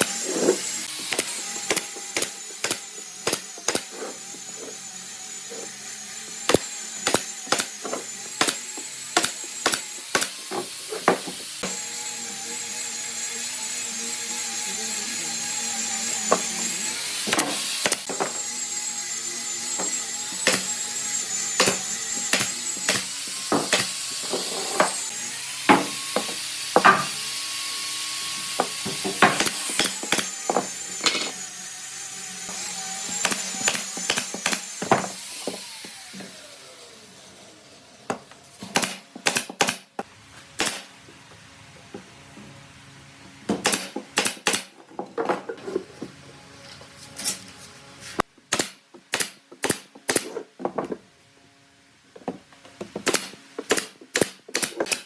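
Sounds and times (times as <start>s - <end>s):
power tool motor whining: 0.0s - 37.7s.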